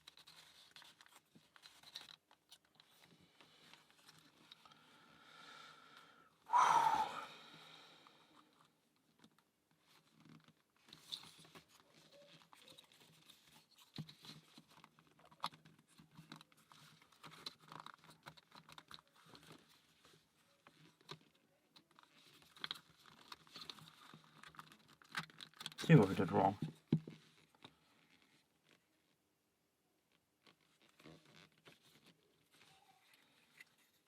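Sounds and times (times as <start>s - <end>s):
soft rustling: 0.0s - 4.8s, 30.1s - 34.0s.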